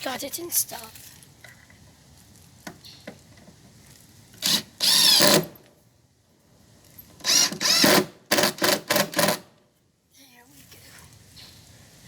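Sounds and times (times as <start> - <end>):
power drill driving screw into wood: 4.4 - 5.6, 7.2 - 9.5.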